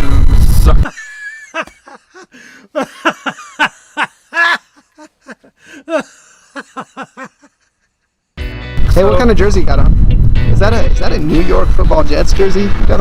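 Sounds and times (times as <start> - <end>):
person laughing: 0.7 - 8.1.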